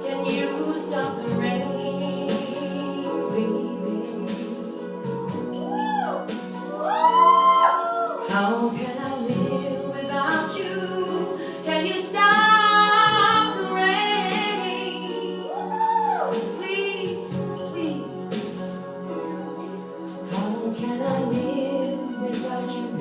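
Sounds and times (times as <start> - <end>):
woman singing wordless ad-libs: 0.0 - 5.1, 8.2 - 15.7, 16.3 - 18.3, 20.3 - 23.0
ballad backing track: 0.0 - 23.0
choir-like backing vocals: 0.0 - 23.0.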